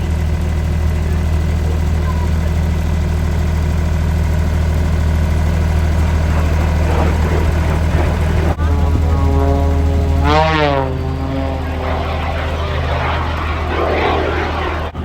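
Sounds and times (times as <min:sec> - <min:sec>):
engine drone: 0:04.2 - 0:15.0.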